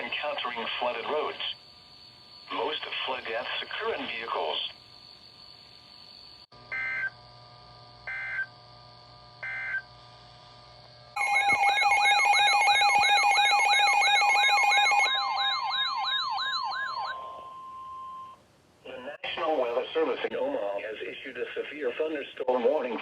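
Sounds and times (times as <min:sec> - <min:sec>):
buzzy digital data tone chirps: 0:00.0 - 0:07.4, 0:08.0 - 0:08.6, 0:09.4 - 0:09.9, 0:11.2 - 0:18.4
warbling electronic alert alarm: 0:11.2 - 0:18.4.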